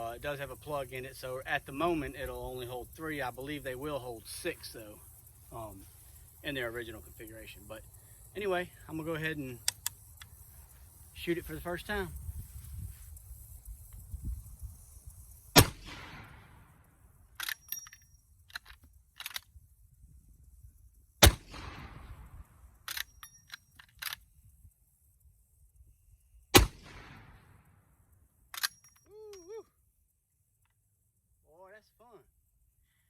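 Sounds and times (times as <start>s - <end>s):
shotgun blasts with echo: 15.6s - 16.7s, 21.2s - 22.4s, 26.5s - 27.6s
metallic clacks of gun lever: 17.4s - 19.6s, 22.8s - 24.3s, 28.5s - 29.5s.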